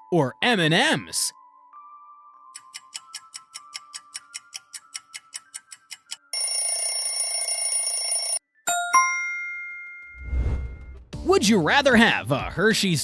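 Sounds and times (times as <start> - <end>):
alarm bell ringing: 6.4 - 10.2
bell ding: 8.7 - 10.2.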